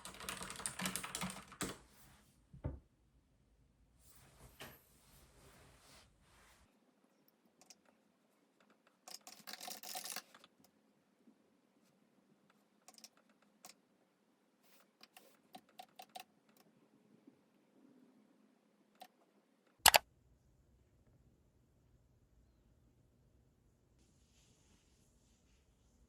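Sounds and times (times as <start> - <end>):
typing on mechanical keyboard: 0.0 - 1.8, 9.1 - 10.5.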